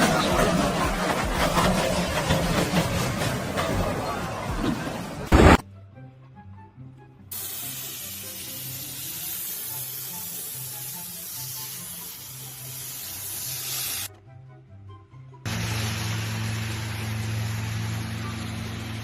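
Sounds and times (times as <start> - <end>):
spraying hiss: 7.3 - 14.1.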